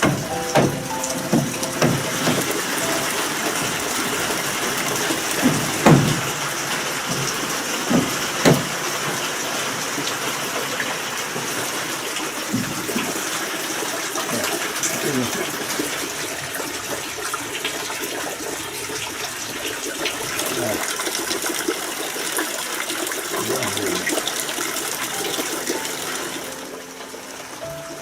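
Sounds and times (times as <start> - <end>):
dull knocks: 0.0 - 4.1, 4.9 - 6.4, 7.1 - 8.8, 12.5 - 13.2
heavy rain pouring: 0.0 - 28.0.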